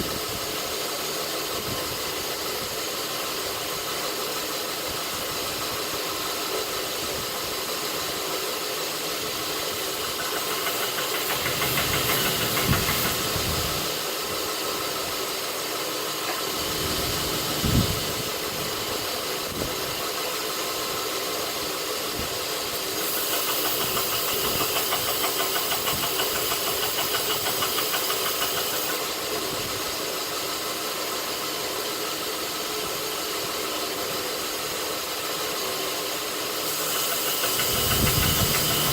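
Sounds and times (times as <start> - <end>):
steel hissing against belt: 0.0 - 38.9
belt grinder running: 8.7 - 15.1, 21.8 - 29.5, 35.2 - 38.9.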